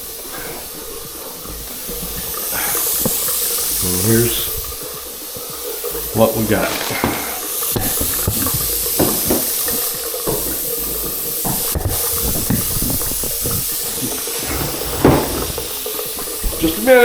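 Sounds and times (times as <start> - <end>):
faucet water running into sink: 0.0 - 17.0.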